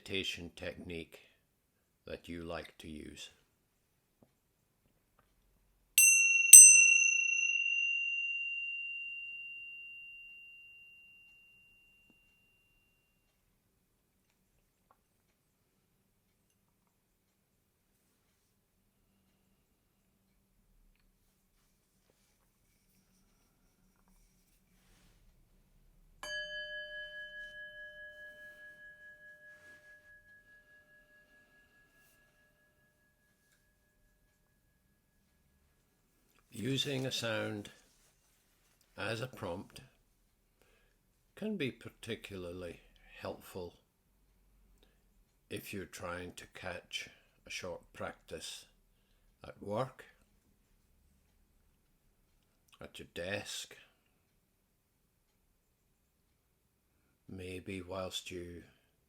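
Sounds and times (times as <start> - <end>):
meditation bell ringing: 6.0 - 13.3, 26.2 - 35.1.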